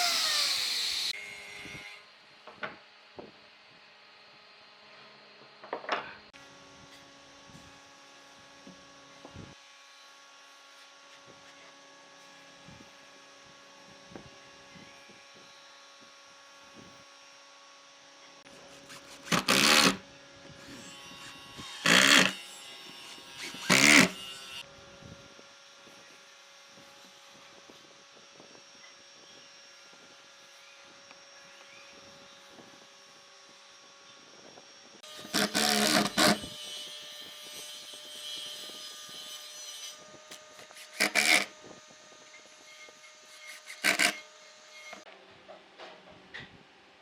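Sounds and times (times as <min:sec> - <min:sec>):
woodworking machine humming: 0:00.0 - 0:01.1.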